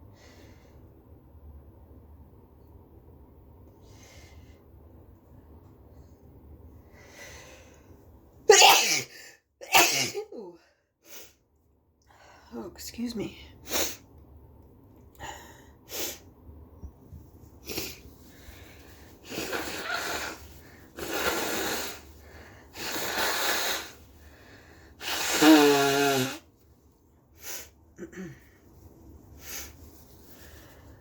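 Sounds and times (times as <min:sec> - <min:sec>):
person blowing nose: 0:17.6 - 0:18.5, 0:19.2 - 0:24.1, 0:25.0 - 0:26.5, 0:27.4 - 0:27.7, 0:29.4 - 0:29.8
person sniffing: 0:17.6 - 0:18.5, 0:19.2 - 0:22.1, 0:22.7 - 0:24.0.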